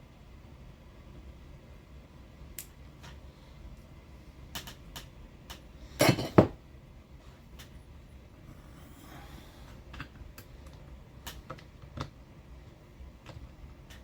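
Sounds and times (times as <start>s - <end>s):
light clicks of small parts: 4.5s - 5.7s, 7.5s - 7.8s, 9.9s - 14.0s.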